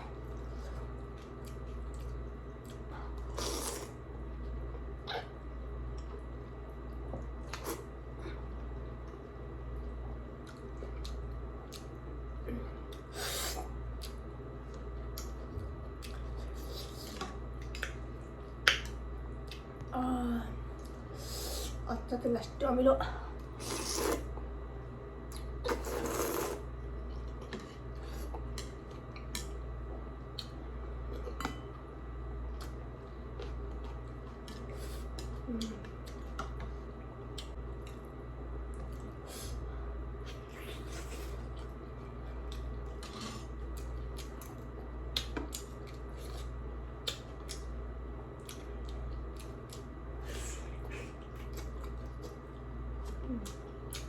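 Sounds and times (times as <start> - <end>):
air conditioner humming: 0.0 - 54.0
slurping noodle soup: 3.2 - 4.0, 23.6 - 24.3, 25.6 - 26.7
chewing: 40.3 - 47.8, 48.4 - 54.0.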